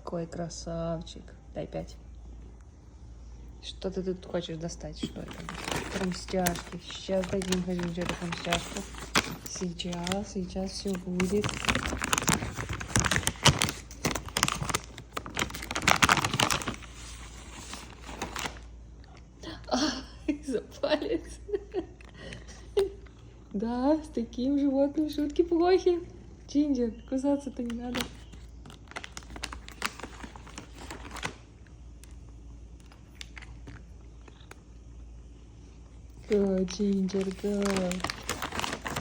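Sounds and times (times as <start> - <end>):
treat packet crinkling and rustling: 5.0 - 18.8, 27.5 - 34.9, 35.7 - 39.0.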